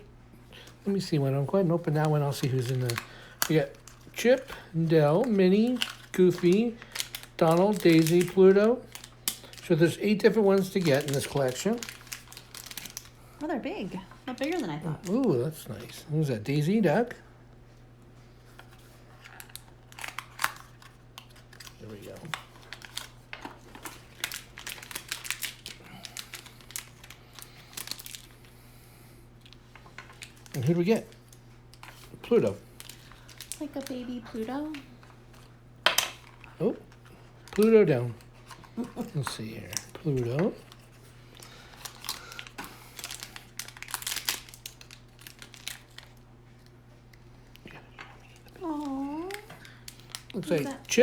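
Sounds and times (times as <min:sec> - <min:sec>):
packaging crinkling: 0:00.5 - 0:17.2, 0:18.4 - 0:28.6, 0:29.3 - 0:46.7, 0:48.1 - 0:51.0
sharp packaging clicks: 0:01.9 - 0:13.2, 0:18.6 - 0:28.4, 0:29.4 - 0:46.2, 0:48.4 - 0:51.0.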